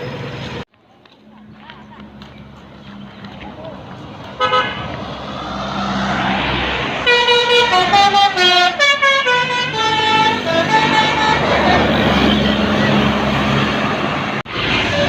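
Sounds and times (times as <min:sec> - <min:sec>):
bus horn playing a melody: 0:04.4 - 0:04.9, 0:07.0 - 0:13.0.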